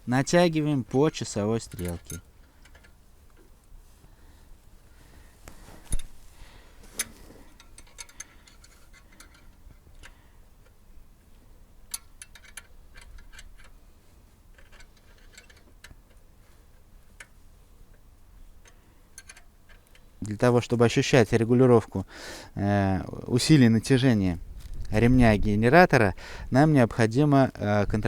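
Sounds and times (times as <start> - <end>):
wrench clicking: 7.0 - 10.8, 11.9 - 13.8, 14.5 - 16.2, 18.6 - 20.1.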